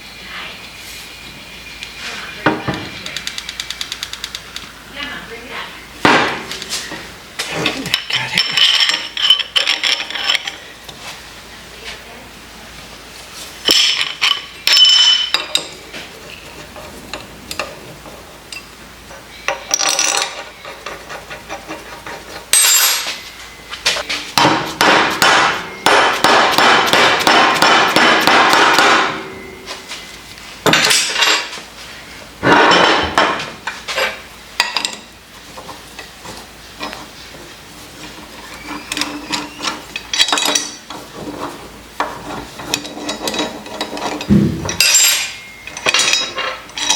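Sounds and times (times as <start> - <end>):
tools clanking on metal vise: 7.6 - 10.6, 13.7 - 15.9, 38.6 - 46.9.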